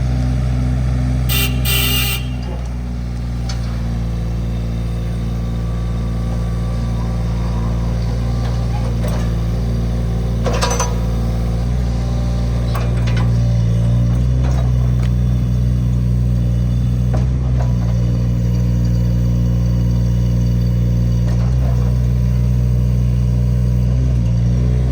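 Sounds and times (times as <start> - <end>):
diesel engine idling: 0.0 - 3.4.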